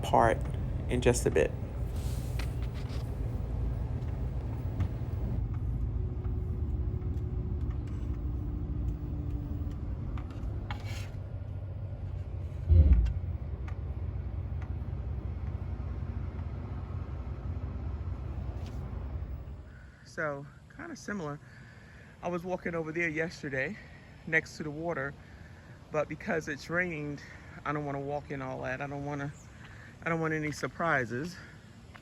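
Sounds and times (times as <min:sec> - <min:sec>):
road and engine rumble in car: 0:00.0 - 0:20.8, 0:22.1 - 0:32.0
loud thump: 0:12.6 - 0:13.3.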